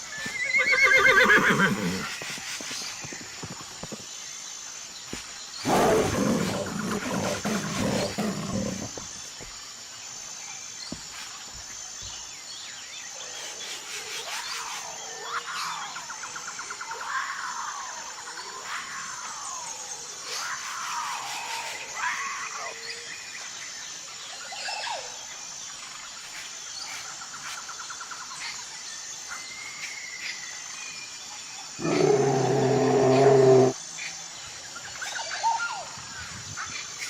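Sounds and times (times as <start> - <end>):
high animal calls: 0.3 - 2.1, 5.6 - 9.0, 31.8 - 33.8
large animal deep roar: 5.6 - 9.0, 31.8 - 33.8.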